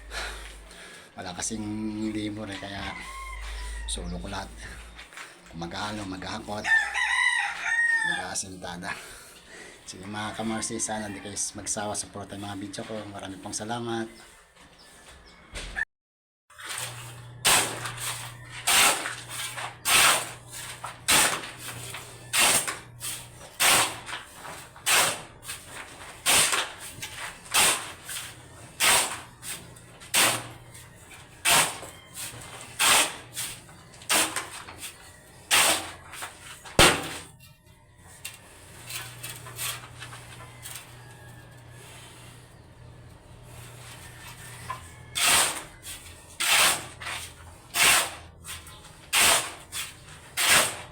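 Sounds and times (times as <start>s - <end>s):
tool scraping wet mortar: 0.0s - 6.8s, 16.5s - 37.3s, 38.0s - 42.7s, 43.4s - 50.9s.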